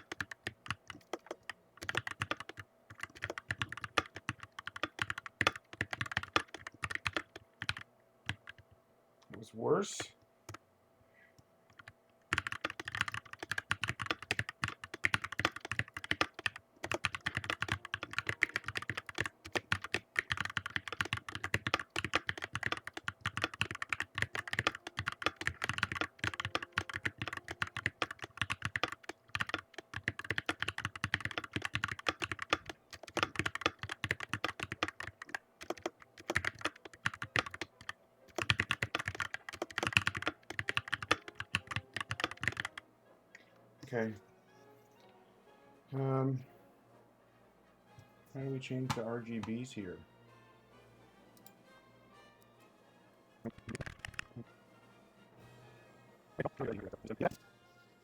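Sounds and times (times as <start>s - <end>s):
mechanical keyboard typing: 0.0s - 8.6s, 11.7s - 42.8s, 53.5s - 54.3s.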